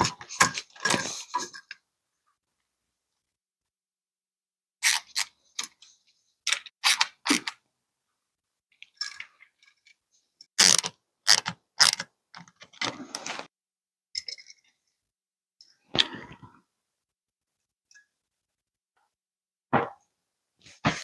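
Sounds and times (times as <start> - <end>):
mechanical clicks and scrapes: 10.6 - 12.0.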